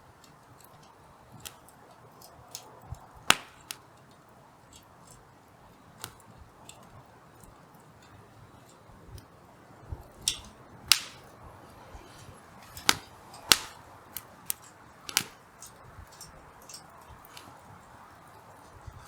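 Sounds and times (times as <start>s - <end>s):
campfire crackling and popping: 0.0s - 19.0s
flame hiss: 3.2s - 3.8s, 9.9s - 15.5s.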